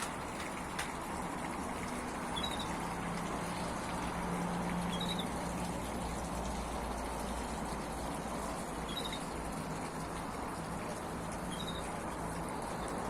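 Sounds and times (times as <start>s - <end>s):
small waterfall trickling and splashing: 0.0s - 13.0s
small bird chirping: 2.3s - 2.8s, 11.5s - 11.9s.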